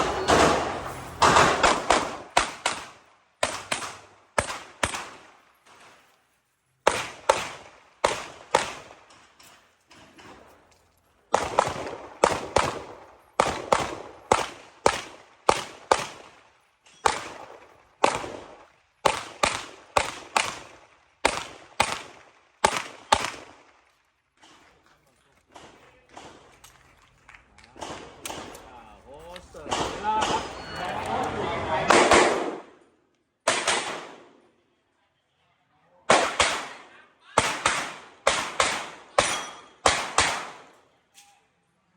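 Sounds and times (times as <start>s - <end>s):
handgun shots: 0.0s - 5.3s, 27.8s - 28.7s.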